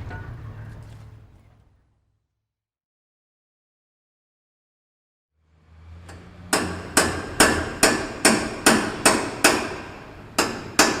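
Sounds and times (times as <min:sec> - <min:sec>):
hammer blows ringing: 0:06.5 - 0:11.0.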